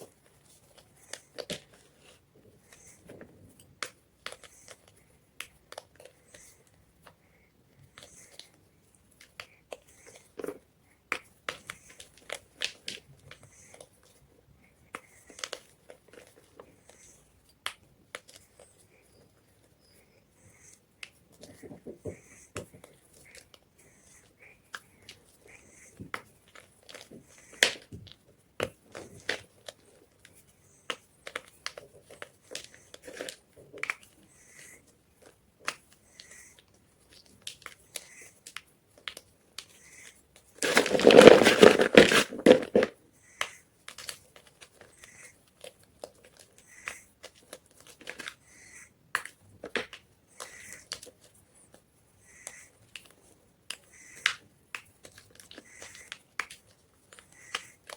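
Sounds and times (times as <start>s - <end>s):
chalk crunching: 40.6s - 42.9s.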